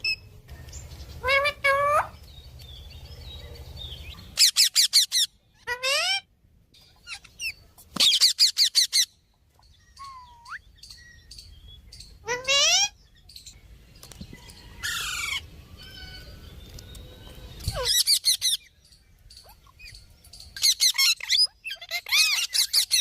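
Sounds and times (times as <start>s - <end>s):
parrot calling: 1.2s - 2.2s, 4.2s - 6.3s, 7.0s - 9.2s, 12.2s - 13.0s, 20.6s - 23.0s.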